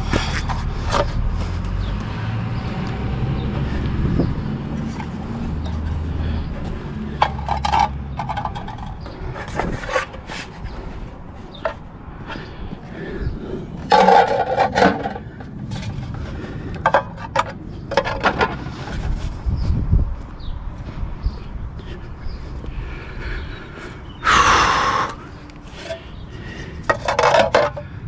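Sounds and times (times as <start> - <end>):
objects clattering and scraping: 0.0 - 2.0, 4.7 - 13.1, 13.8 - 19.5, 25.7 - 27.9
low engine hum: 0.0 - 13.9.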